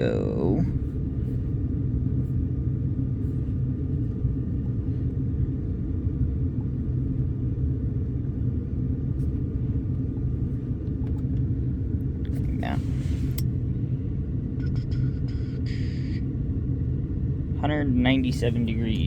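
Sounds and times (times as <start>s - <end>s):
diesel engine idling: 0.0s - 19.0s.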